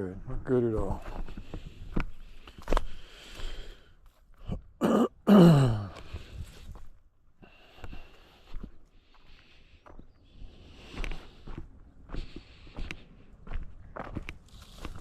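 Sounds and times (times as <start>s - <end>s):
man coughing: 4.8s - 5.9s.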